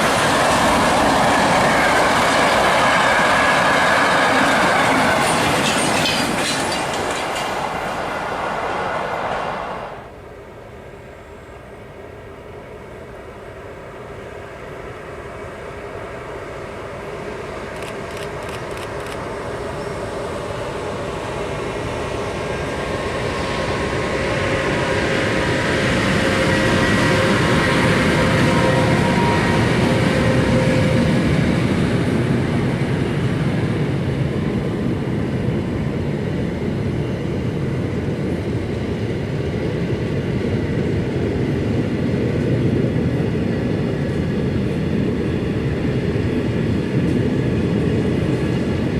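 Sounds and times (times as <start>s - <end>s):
electric train rumble: 0.0s - 48.9s
locomotive whine: 0.0s - 48.9s.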